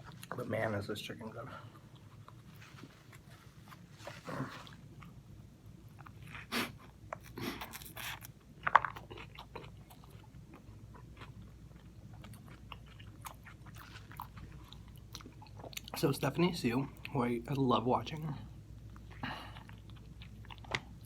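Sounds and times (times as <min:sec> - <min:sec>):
wet chewing: 0:05.9 - 0:16.2, 0:18.8 - 0:21.0.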